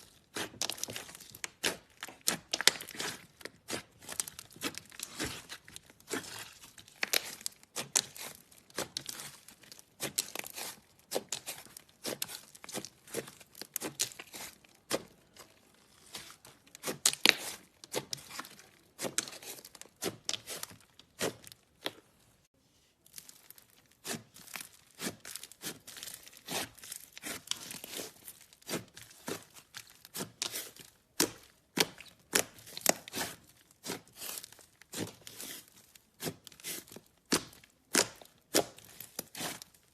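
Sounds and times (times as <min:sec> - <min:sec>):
slime crackling and popping: 0:00.1 - 0:22.0, 0:23.0 - 0:39.9.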